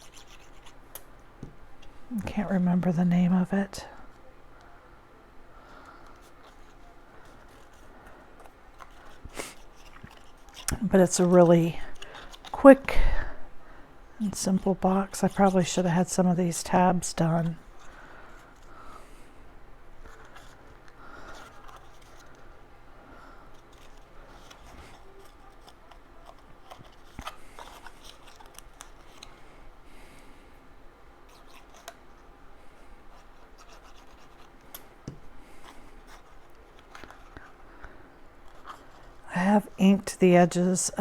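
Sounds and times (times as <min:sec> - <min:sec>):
paper rubbing and scratching: 0:00.0 - 0:00.8, 0:08.8 - 0:12.8, 0:14.5 - 0:18.7, 0:33.1 - 0:34.6, 0:35.5 - 0:37.6.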